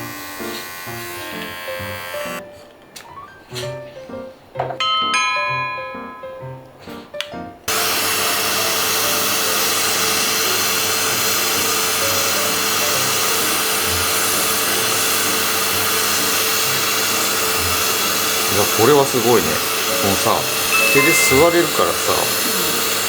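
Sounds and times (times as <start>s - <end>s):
grooming vacuum suction: 0.0s - 2.4s, 7.7s - 23.0s.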